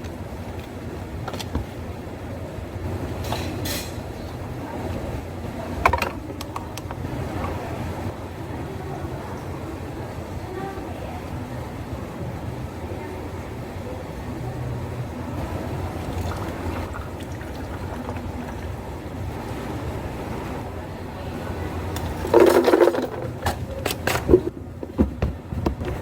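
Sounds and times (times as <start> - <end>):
steady low hum: 0.0 - 26.0
loud clatter: 22.0 - 26.0.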